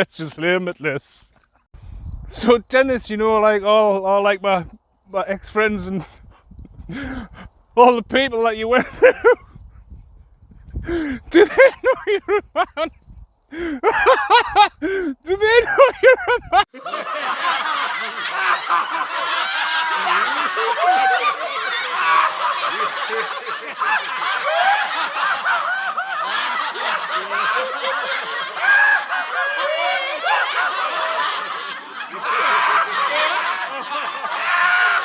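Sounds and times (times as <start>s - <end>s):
crowd laughing: 10.9s - 12.9s, 13.5s - 35.0s.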